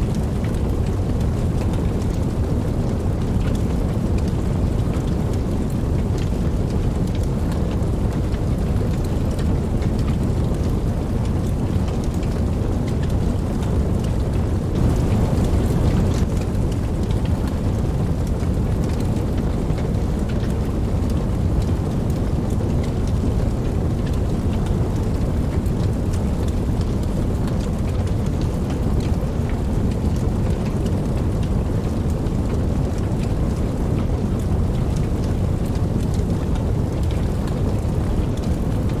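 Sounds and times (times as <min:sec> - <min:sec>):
steady rain: 0:00.0 - 0:39.0
single raindrops ticking: 0:08.9 - 0:22.1
distant thunder rumble: 0:13.0 - 0:16.5.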